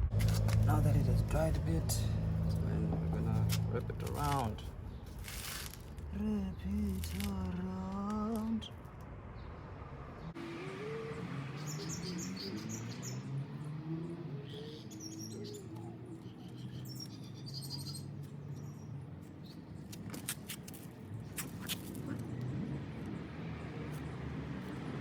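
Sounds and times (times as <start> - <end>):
small birds chirping: 10.2 - 25.0.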